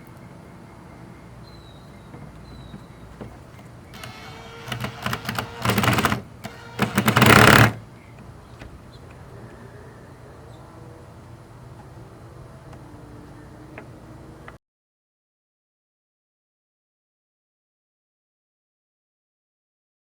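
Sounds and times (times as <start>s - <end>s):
plastic parts clicking and rattling: 4.0s - 7.8s.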